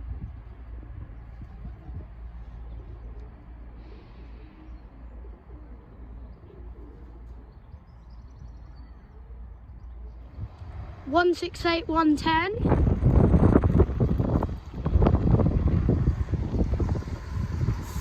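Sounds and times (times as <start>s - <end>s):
pigeons cooing softly: 0.1s - 10.6s
steady low rumble: 9.6s - 18.0s.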